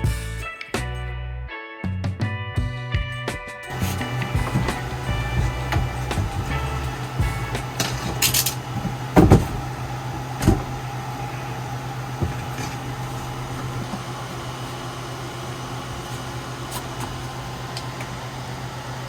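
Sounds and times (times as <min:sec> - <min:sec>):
steady low hum: 0:03.7 - 0:19.0
knocks: 0:07.2 - 0:10.9, 0:12.1 - 0:14.1.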